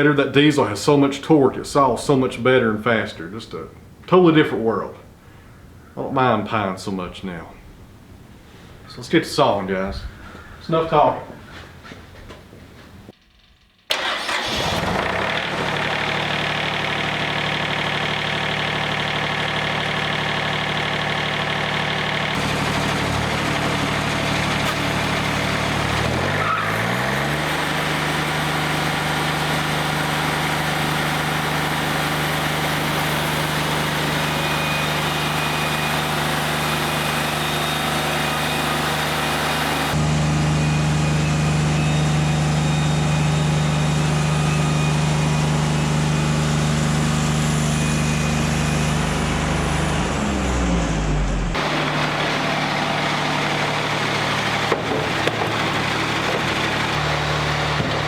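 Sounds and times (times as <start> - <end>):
sawmill diesel engine revving: 13.9 - 58.0.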